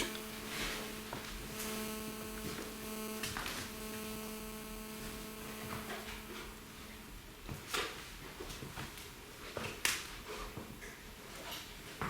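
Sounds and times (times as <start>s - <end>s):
electrical hum: 0.0s - 7.8s.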